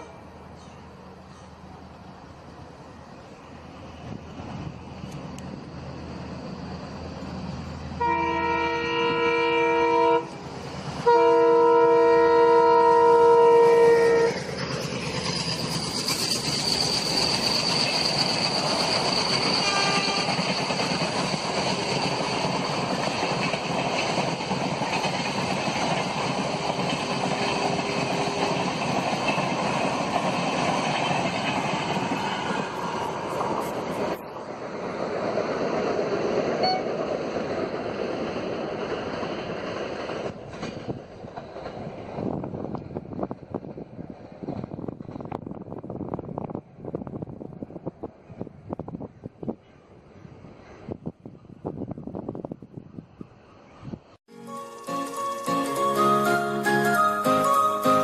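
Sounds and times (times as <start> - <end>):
train wheels rushing on rails: 0.0 - 58.0
locomotive horn blasts: 8.0 - 10.4, 11.0 - 14.4, 19.6 - 20.3.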